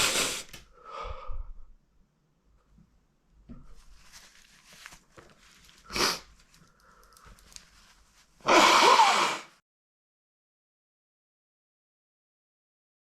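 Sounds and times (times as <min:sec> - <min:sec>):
man blowing his nose: 0:00.0 - 0:00.6, 0:05.8 - 0:06.3, 0:08.4 - 0:09.6
sniffly breathing: 0:05.8 - 0:07.4
man sneezing: 0:08.4 - 0:09.5.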